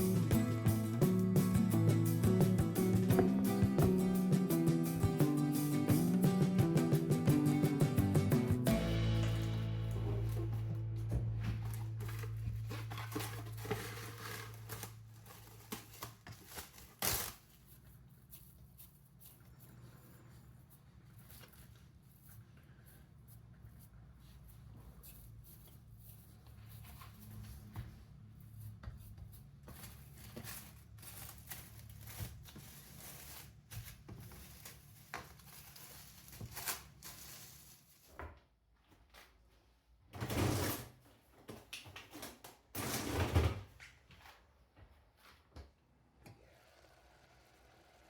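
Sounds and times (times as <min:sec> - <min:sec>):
low hum: 0:08.6 - 0:13.7.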